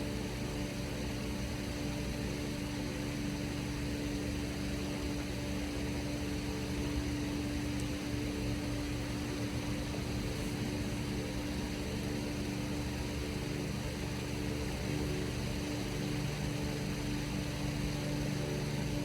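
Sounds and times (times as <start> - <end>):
steady machine hum: 0.0 - 19.0.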